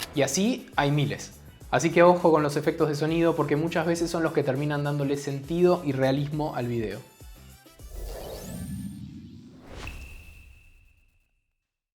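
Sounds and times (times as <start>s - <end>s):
whoosh: 7.8s - 11.2s.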